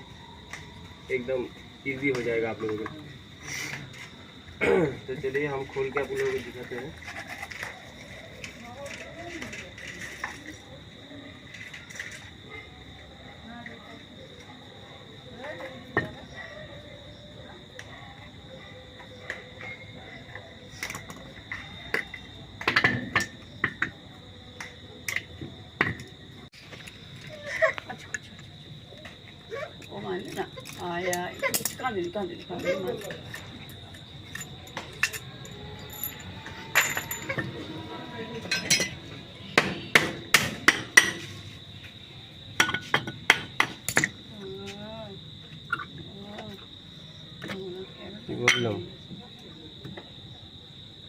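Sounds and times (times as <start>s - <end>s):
hand tools clicking and knocking: 29.8s - 37.6s, 38.4s - 41.3s, 42.6s - 44.2s.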